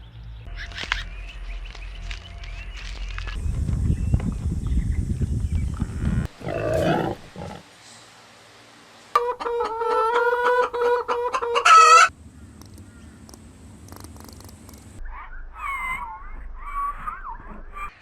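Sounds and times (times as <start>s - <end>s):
low rumbling noise: 0.2s - 7.5s.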